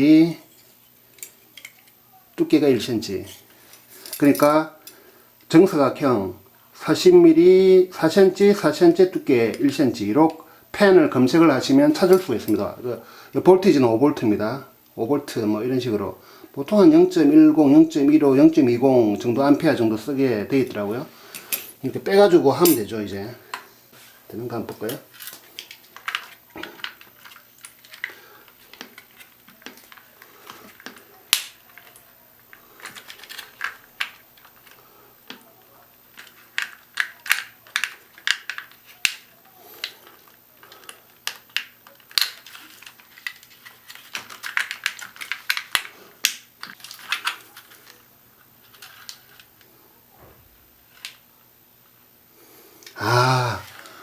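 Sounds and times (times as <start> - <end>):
plastic parts clicking and tapping: 24.8 - 32.0, 36.1 - 48.0.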